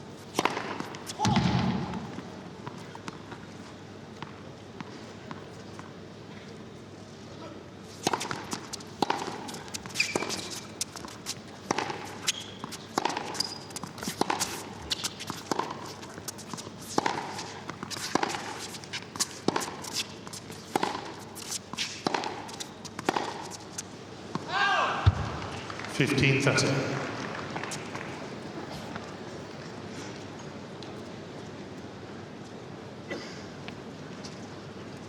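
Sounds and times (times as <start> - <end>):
tennis ball hit by racquets: 0.3 - 3.2, 8.0 - 25.7
ball bouncing on court: 0.4 - 2.3, 24.3 - 28.1
shoe squeaks: 9.4 - 11.4, 12.0 - 20.7.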